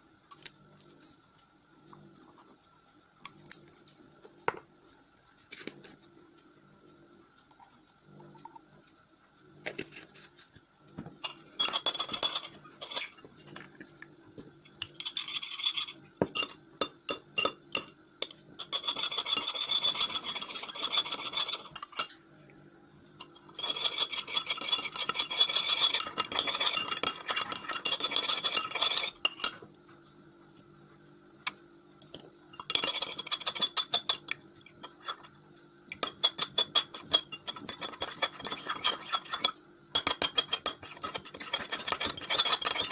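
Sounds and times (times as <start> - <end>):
utensil scraping a bowl: 11.2 - 13.9, 14.7 - 17.9, 18.6 - 22.2, 23.2 - 29.6, 32.6 - 35.4, 36.0 - 42.9.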